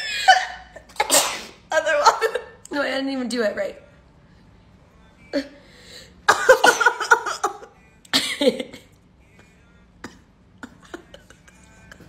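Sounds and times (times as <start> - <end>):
person coughing: 0.0 - 2.5, 6.3 - 8.9, 10.0 - 12.0.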